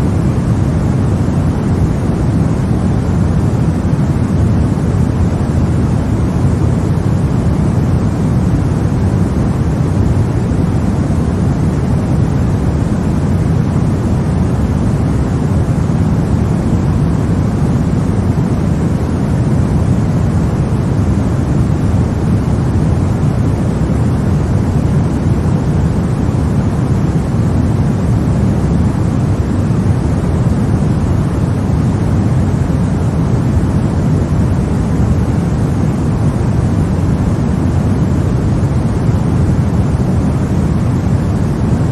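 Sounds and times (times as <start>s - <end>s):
white noise rush: 0.0s - 41.9s.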